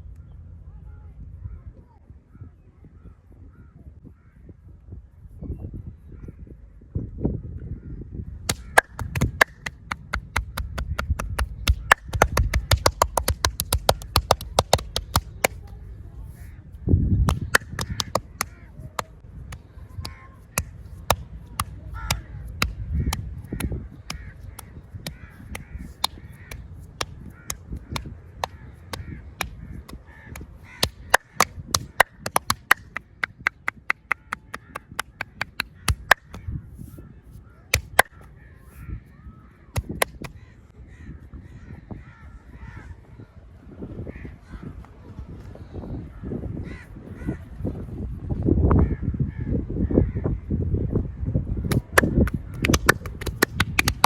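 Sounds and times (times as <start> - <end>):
hands slapping on bare back: 8.5 - 15.8, 17.2 - 36.5, 37.8 - 38.3, 39.8 - 40.4, 51.7 - 54.0
crows cawing: 22.9 - 36.4, 46.6 - 47.4.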